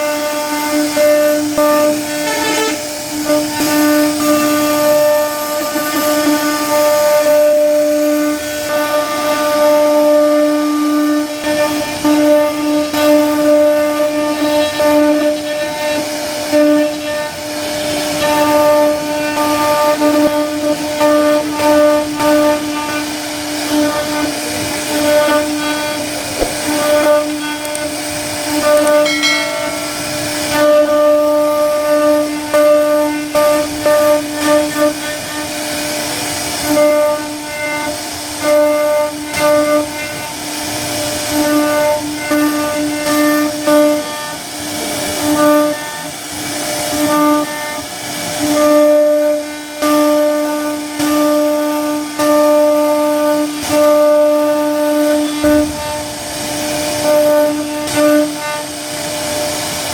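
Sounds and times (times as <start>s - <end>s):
router spindle whining: 0.0s - 8.7s, 20.8s - 36.2s
router bit cutting wood: 0.0s - 9.7s, 10.8s - 48.4s, 52.0s - 59.9s.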